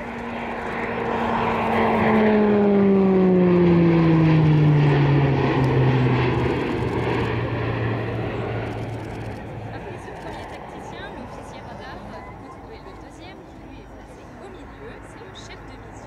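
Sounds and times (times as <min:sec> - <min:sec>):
turboprop aircraft flying past: 0:00.0 - 0:16.0.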